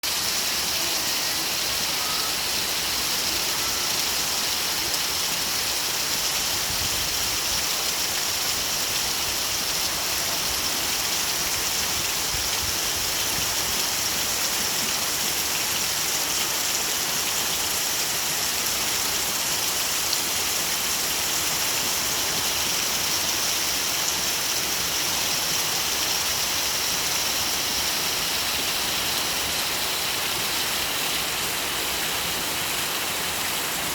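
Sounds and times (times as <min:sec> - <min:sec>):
rain falling: 0:00.0 - 0:33.9.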